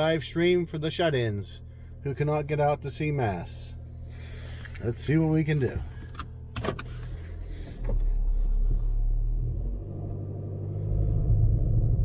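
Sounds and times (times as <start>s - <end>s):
car engine and tyre rumble: 0.0s - 12.0s.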